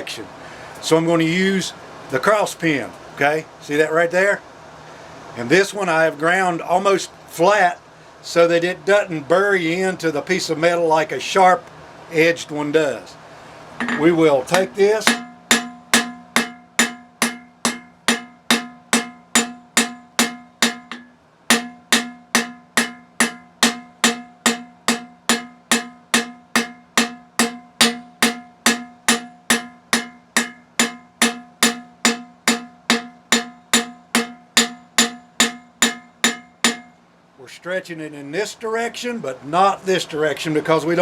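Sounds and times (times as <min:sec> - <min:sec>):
hammer striking hot steel on anvil: 0:13.8 - 0:37.0.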